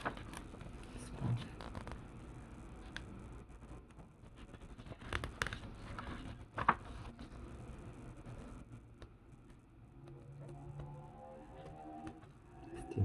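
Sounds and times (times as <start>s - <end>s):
paper pages rustling: 4.2s - 7.4s.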